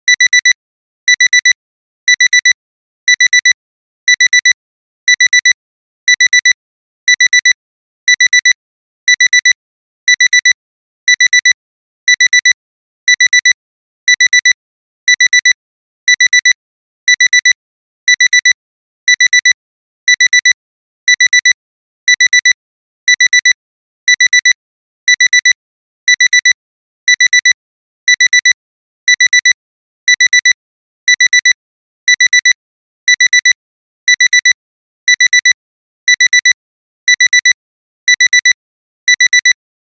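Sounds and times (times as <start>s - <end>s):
alarm clock double beeps: 33.1s - 39.6s.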